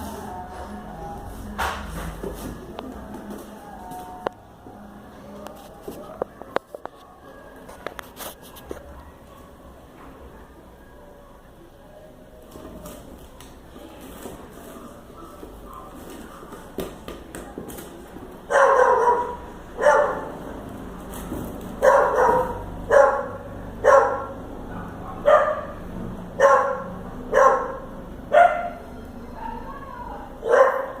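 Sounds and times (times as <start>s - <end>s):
dog barking: 18.5s - 20.4s, 21.8s - 25.8s, 26.4s - 28.8s, 30.4s - 31.0s.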